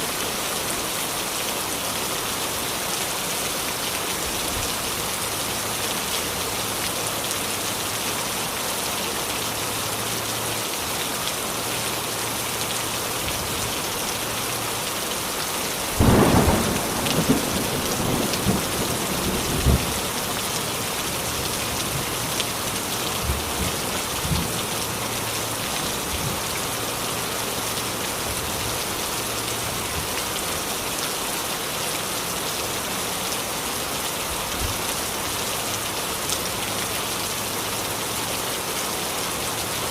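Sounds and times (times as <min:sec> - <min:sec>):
heavy rain: 0:00.0 - 0:39.9
thunder clap and rumble: 0:16.0 - 0:20.2.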